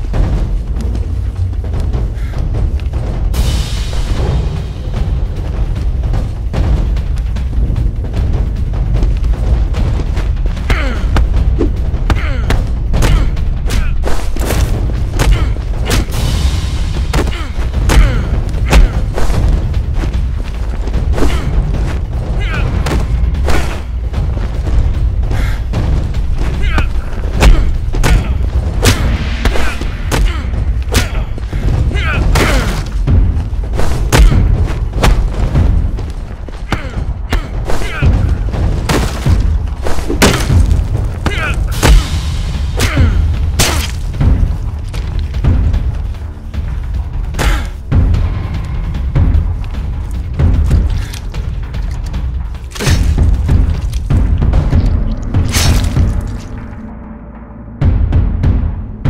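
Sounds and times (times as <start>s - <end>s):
deep booming music: 0.0s - 59.0s
booming hits and shots: 37.0s - 44.4s.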